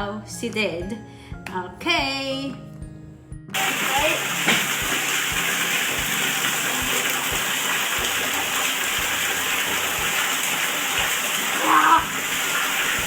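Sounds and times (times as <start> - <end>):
water gushing: 3.6 - 13.0.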